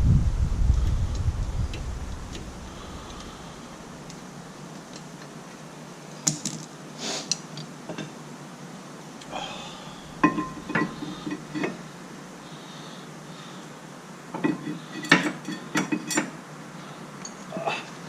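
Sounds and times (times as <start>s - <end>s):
metal tools clinking: 10.1s - 11.8s, 14.4s - 16.4s, 17.2s - 17.6s.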